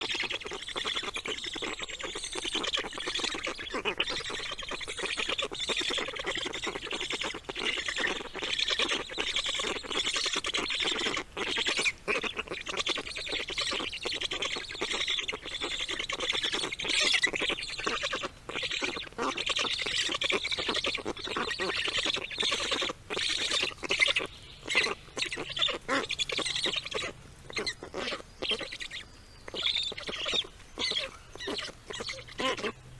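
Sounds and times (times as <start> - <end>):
nestlings squawking: 0.0 - 32.9.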